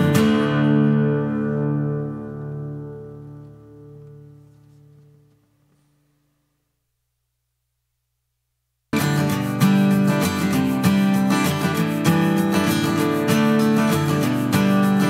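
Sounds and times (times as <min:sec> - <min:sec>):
held guitar chord: 0:00.0 - 0:05.4.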